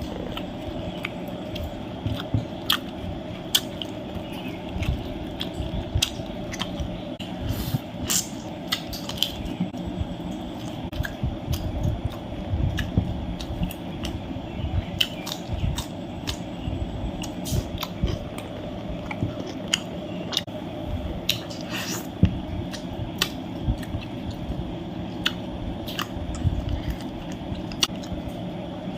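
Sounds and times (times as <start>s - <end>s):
person chewing with mouth smacks: 14.9s - 16.5s.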